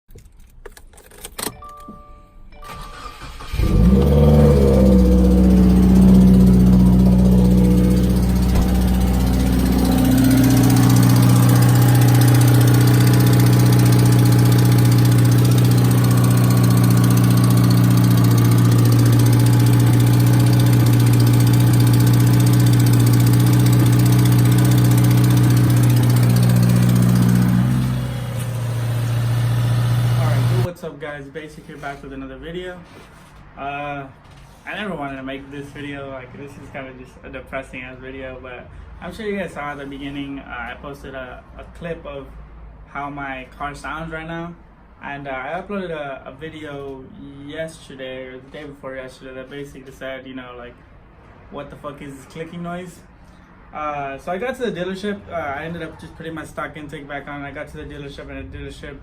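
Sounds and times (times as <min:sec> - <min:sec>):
car engine starting and idling: 0:02.7 - 0:30.7
engine clicking noise: 0:02.9 - 0:30.7.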